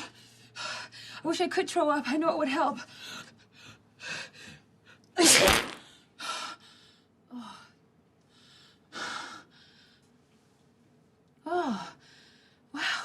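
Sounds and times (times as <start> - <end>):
woman sneezing: 5.2 - 5.8.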